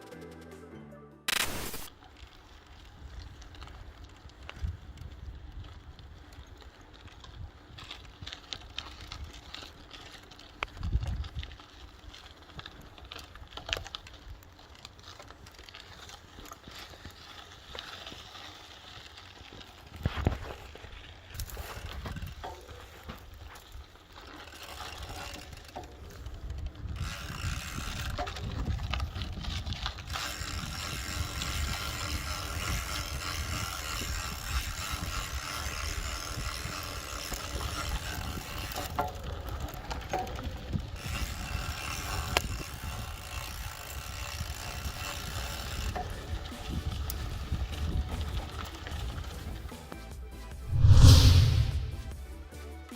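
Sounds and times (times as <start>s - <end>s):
rumble of tyres and wind: 2.0s - 52.2s
bike freehub ratchet clicking: 24.3s - 49.6s.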